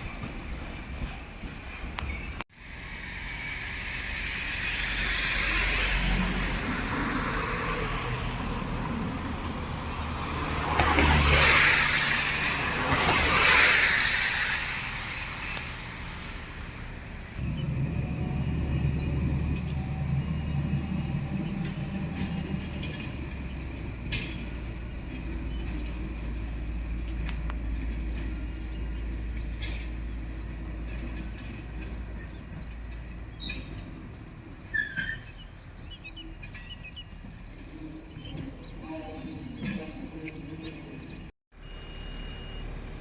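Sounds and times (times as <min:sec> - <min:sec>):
train engine humming: 0:00.0 - 0:34.7
birds chirping: 0:16.9 - 0:41.3.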